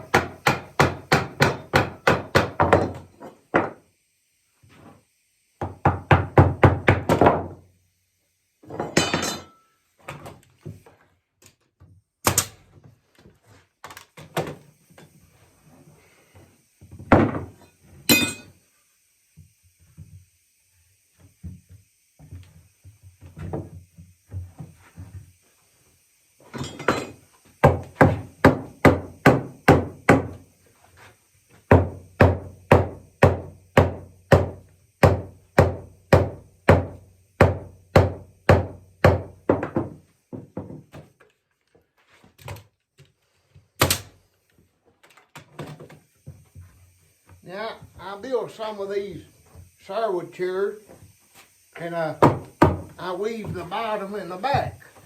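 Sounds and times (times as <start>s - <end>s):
hammer knocking wood: 0.0s - 3.8s, 5.6s - 7.6s, 27.6s - 30.4s, 31.7s - 40.8s, 52.2s - 53.6s.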